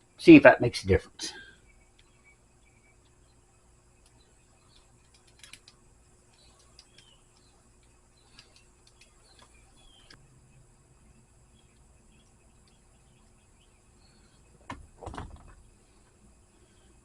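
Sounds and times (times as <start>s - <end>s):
faint bird chirps: 1.2s - 14.7s
small metallic clicks: 4.0s - 10.2s.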